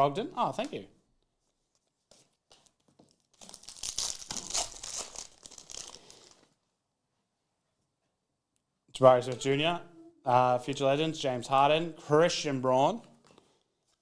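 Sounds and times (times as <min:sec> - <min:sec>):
wrapper crinkling and tearing: 0:02.5 - 0:06.6.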